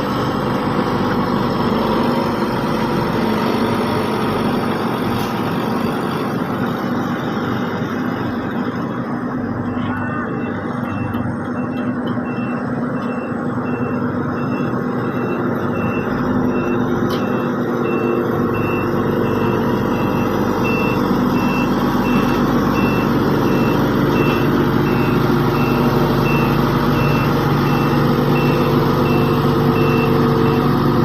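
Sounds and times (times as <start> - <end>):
diesel engine droning: 0.0 - 31.0
reversing alarm beeping: 9.5 - 31.0.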